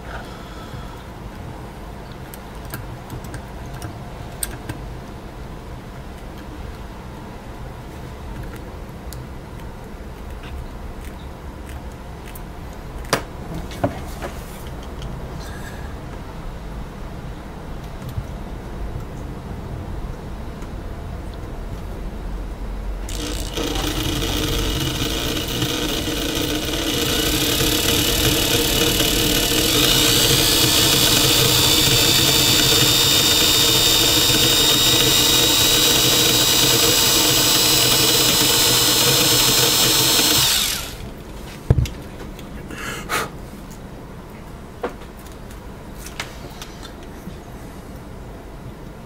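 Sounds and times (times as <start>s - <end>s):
small electric drill whining: 23.1s - 41.1s.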